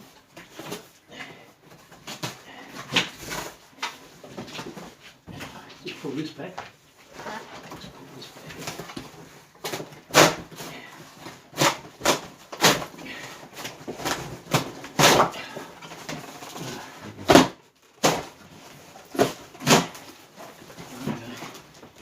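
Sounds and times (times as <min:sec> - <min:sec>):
cardboard box tearing by hand: 0:09.6 - 0:21.4.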